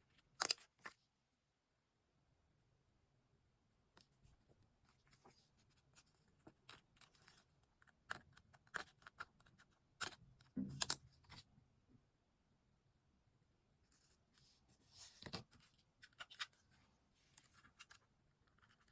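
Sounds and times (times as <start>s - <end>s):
paper rustling: 14.4s - 18.0s.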